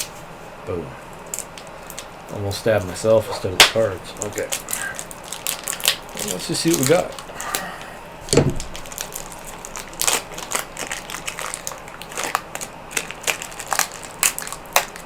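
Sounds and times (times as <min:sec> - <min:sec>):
cardboard and plastic crinkling: 0:01.1 - 0:15.0
dull thump: 0:08.3 - 0:08.8.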